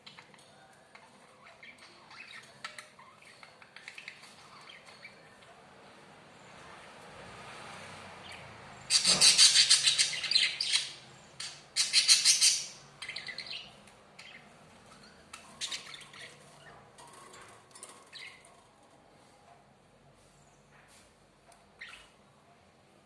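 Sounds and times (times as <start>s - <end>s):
budgerigars chattering: 8.2s - 14.4s.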